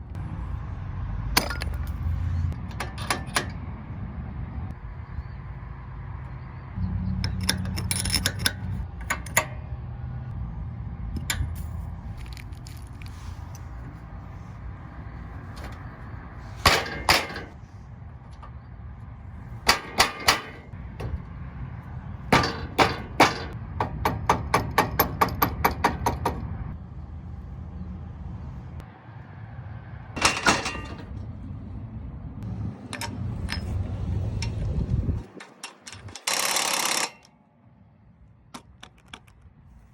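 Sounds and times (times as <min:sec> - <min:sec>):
low steady rumble: 0:00.0 - 0:25.2, 0:25.8 - 0:35.3
sharp metallic clicks and knocks: 0:01.4 - 0:03.7, 0:07.2 - 0:09.8, 0:11.1 - 0:13.1, 0:16.6 - 0:17.6, 0:19.6 - 0:21.3, 0:22.3 - 0:26.6, 0:32.4 - 0:37.4, 0:38.5 - 0:39.5.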